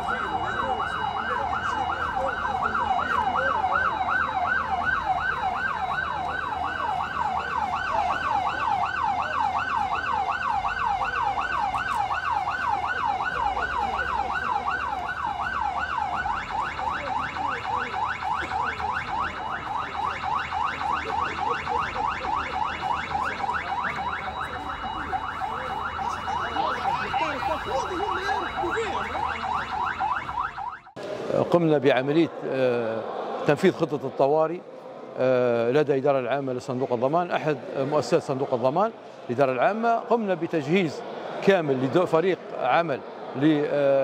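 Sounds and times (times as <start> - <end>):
electronic siren sweeping: 0.0 - 31.0.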